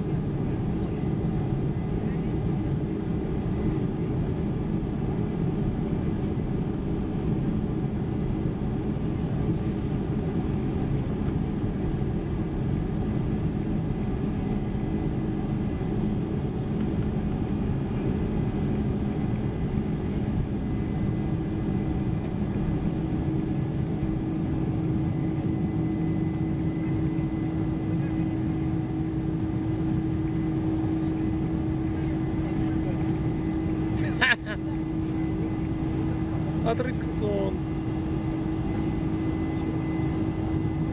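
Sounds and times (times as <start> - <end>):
jet engine cabin rumble: 0.0 - 40.9.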